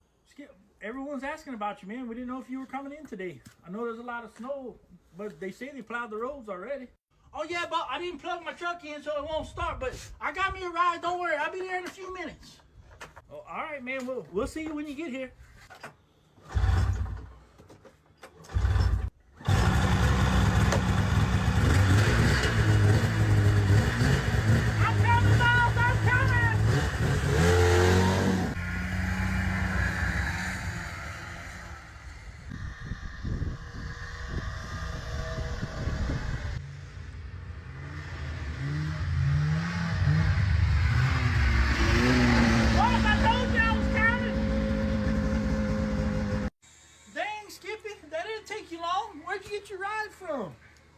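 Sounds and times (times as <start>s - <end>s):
engine starting and running: 16.4s - 17.4s, 18.2s - 24.8s
vehicle engine revving: 18.5s - 46.5s.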